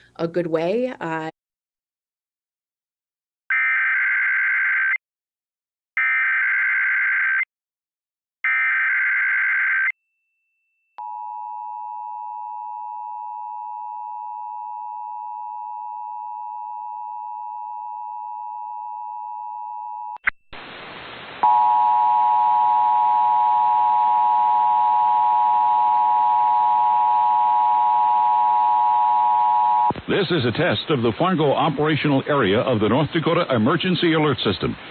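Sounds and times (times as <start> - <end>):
static rush: 20.2 - 21.5.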